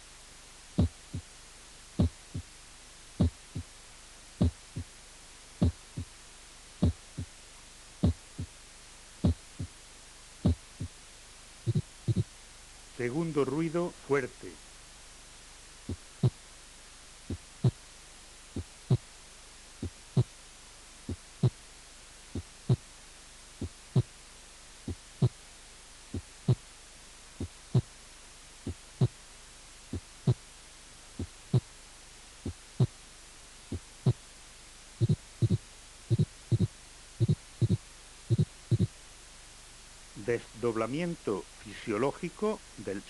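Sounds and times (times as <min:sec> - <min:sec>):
heartbeat through stethoscope: 0:00.8 - 0:01.3, 0:02.0 - 0:02.5, 0:03.2 - 0:03.8, 0:04.4 - 0:05.0, 0:05.6 - 0:06.2, 0:06.8 - 0:07.4, 0:08.0 - 0:08.6, 0:09.2 - 0:09.8, 0:10.4 - 0:11.0, 0:11.6 - 0:12.3, 0:15.8 - 0:16.4, 0:17.2 - 0:17.9, 0:18.5 - 0:19.1, 0:19.8 - 0:20.4, 0:21.0 - 0:21.6, 0:22.3 - 0:22.9, 0:23.6 - 0:24.2, 0:24.8 - 0:25.4, 0:26.1 - 0:26.7, 0:27.4 - 0:28.0, 0:28.6 - 0:29.2, 0:29.9 - 0:30.5, 0:31.2 - 0:31.8, 0:32.4 - 0:33.0, 0:33.7 - 0:34.3, 0:35.0 - 0:39.0.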